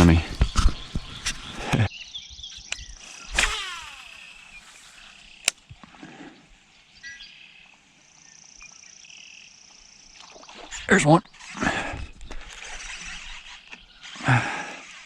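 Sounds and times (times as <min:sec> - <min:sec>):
sharp click: 0:02.7 - 0:05.7
fishing reel whirring: 0:02.8 - 0:05.6, 0:11.3 - 0:15.0
high insect buzz: 0:03.0 - 0:05.5.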